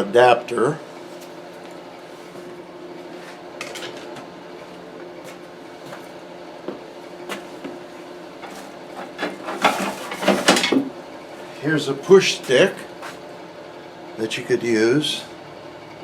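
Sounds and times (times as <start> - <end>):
steady low hum: 0.0 - 16.0
small knocks and rustles: 8.4 - 10.9.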